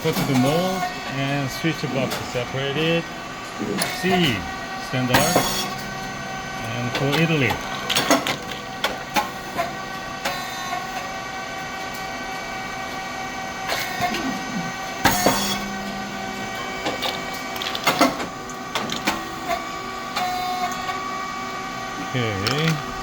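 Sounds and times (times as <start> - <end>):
mechanical clicks and clanks: 0.0 - 1.2, 5.0 - 11.1, 15.0 - 19.6, 22.4 - 23.0
machine motor hum: 0.0 - 23.0.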